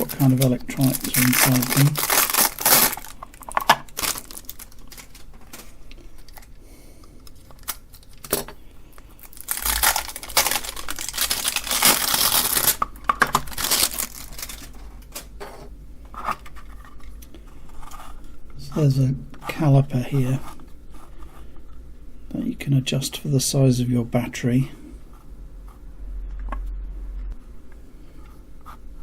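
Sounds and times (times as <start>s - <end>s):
plastic packaging crinkling and tearing: 0.0s - 6.6s, 7.2s - 15.3s.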